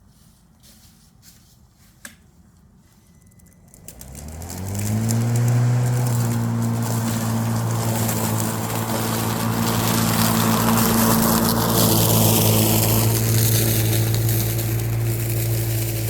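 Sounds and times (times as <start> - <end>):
lawn mower running: 3.4 - 16.0.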